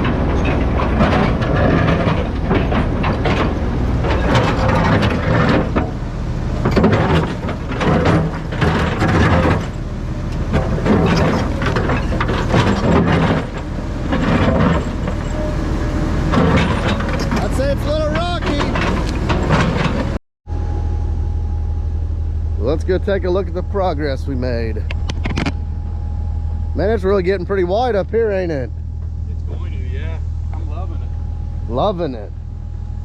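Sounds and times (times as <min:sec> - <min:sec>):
steel tracks clanking: 0:00.0 - 0:20.2
diesel engine under load: 0:00.0 - 0:33.0.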